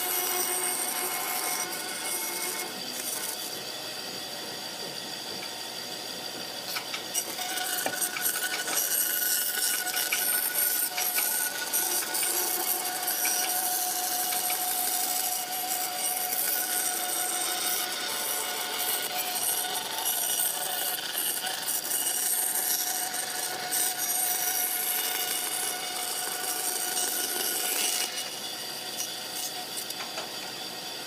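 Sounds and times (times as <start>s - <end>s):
tool scraping wood: 6.7s - 28.4s.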